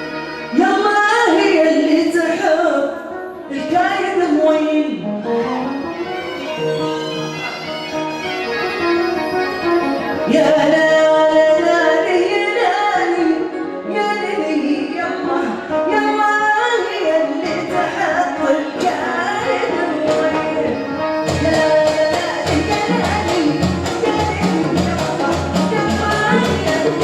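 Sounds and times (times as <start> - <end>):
instrumental accompaniment: 0.0 - 27.0
person singing melody: 0.0 - 27.0
regular drum beat: 21.3 - 27.0.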